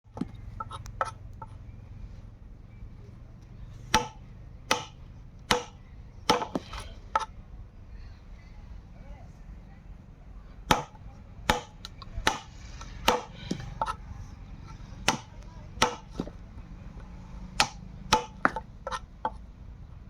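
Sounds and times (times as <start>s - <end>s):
hand tool striking wood: 3.9s - 7.3s, 10.7s - 14.0s, 15.0s - 16.4s, 17.6s - 19.0s.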